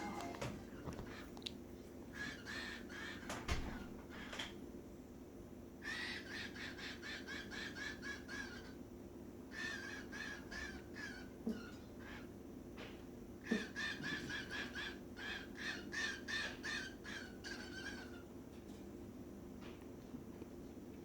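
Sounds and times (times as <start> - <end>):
cockatiel chirping: 13.7 - 18.2.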